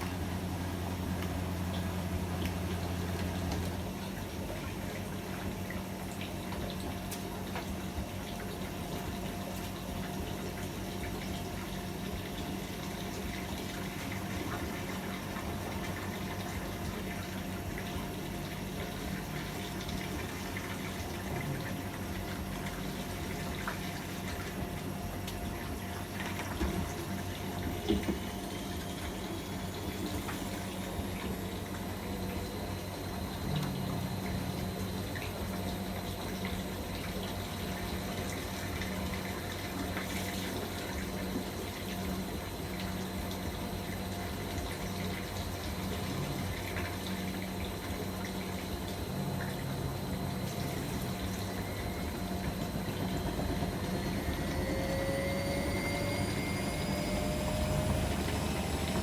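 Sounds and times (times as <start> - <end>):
steady electric hum: 0.0 - 59.0
water rushing through washing machine: 0.0 - 59.0
rising whine: 49.6 - 59.0.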